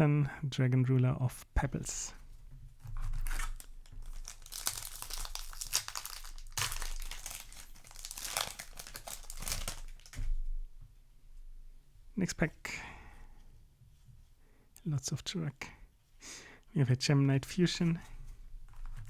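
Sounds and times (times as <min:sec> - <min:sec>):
foil wrapper crinkling and tearing: 0:03.0 - 0:10.2.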